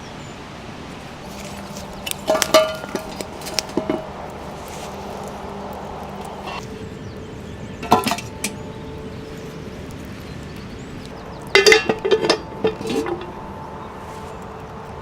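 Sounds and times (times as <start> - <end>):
metal cooking gear clinking: 11.5 - 13.4.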